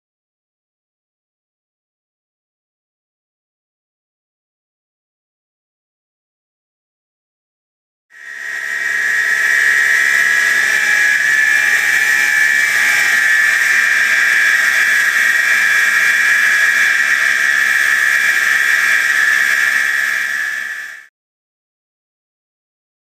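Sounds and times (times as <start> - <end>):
electric pump motor whining: 8.2 - 21.1.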